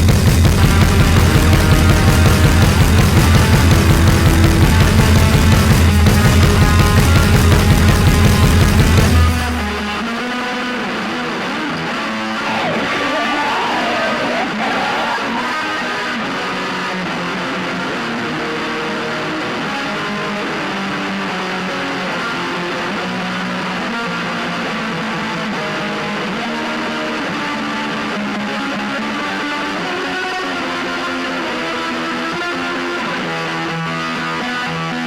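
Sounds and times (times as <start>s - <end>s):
loud heavy music passage: 0.0s - 6.3s, 12.4s - 16.3s.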